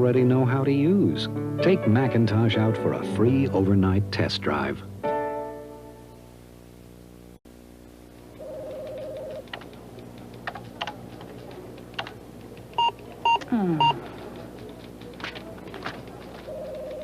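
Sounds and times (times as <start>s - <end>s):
keyboard typing: 8.5s - 17.0s
computer steady tone: 12.8s - 14.0s
short computer beeps: 12.8s - 14.0s.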